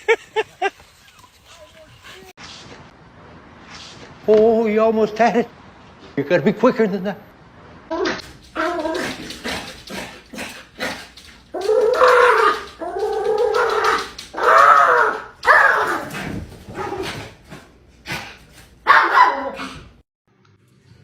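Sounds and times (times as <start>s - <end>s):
dog yelping: 8.0s - 9.6s, 11.5s - 16.2s, 18.9s - 19.9s
dog whining and howling: 11.5s - 16.1s.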